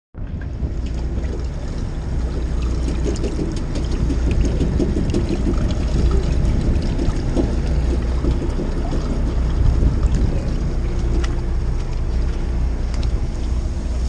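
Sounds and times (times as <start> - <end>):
boat engine rumbling: 0.1 - 14.0
water splashing along hull: 0.2 - 14.0.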